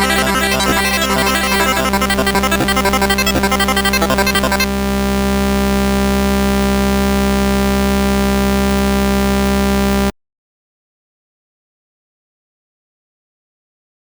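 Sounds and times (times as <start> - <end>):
pulsing electronic pattern: 0.0 - 5.2
harsh buzzing drone: 0.0 - 10.1.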